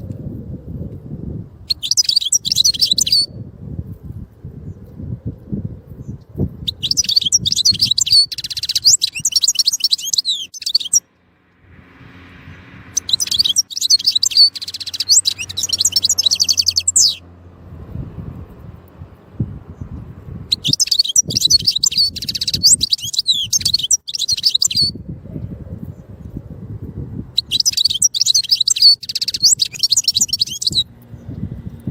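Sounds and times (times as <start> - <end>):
faint high bird chirp: 1.7 - 3.4, 5.9 - 11.1, 12.8 - 17.3, 19.8 - 26.1, 27.4 - 31.7
goldfinch twittering song: 1.7 - 3.4, 6.0 - 11.0, 12.8 - 17.3, 20.5 - 25.0, 27.4 - 31.9.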